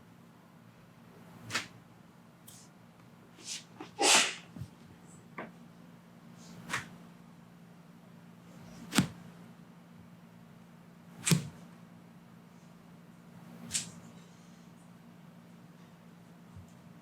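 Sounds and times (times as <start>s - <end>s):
short swish: 3.4s - 4.5s.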